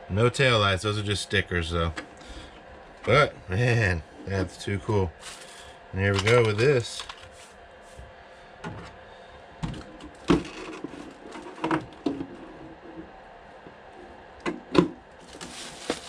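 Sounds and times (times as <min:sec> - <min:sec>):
packaging rustling: 0:05.2 - 0:07.3, 0:15.2 - 0:16.0.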